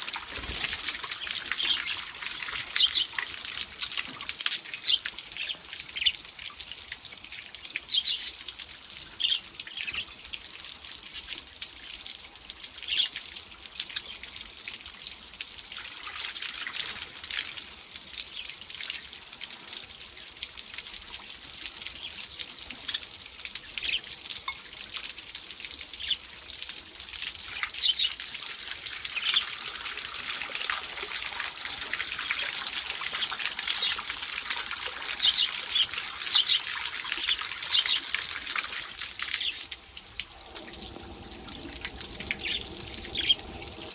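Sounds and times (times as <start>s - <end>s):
water trickling: 0.0s - 43.9s
birds chirping: 35.0s - 38.4s, 39.2s - 39.7s, 40.3s - 43.9s.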